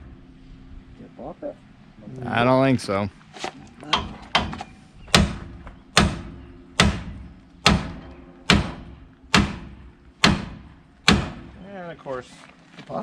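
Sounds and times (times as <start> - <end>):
hammer blows on metal: 3.9 - 11.6.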